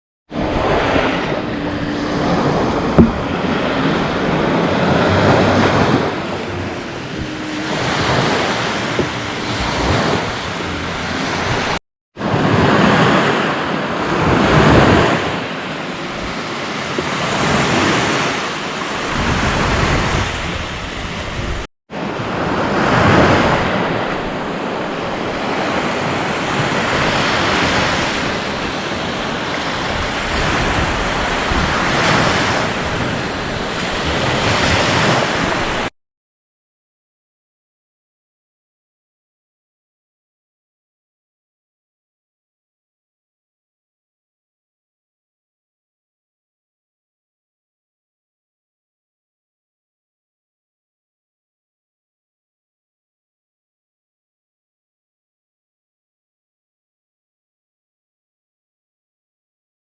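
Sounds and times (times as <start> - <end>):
wind buffeting microphone: 0.3 - 11.8, 12.4 - 21.6
waves washing onto shore: 0.3 - 35.9.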